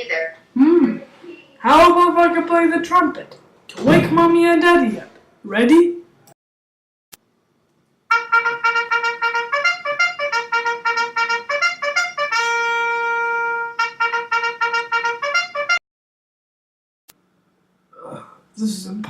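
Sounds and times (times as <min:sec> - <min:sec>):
trumpet playing a quick tune: 0:08.1 - 0:15.8.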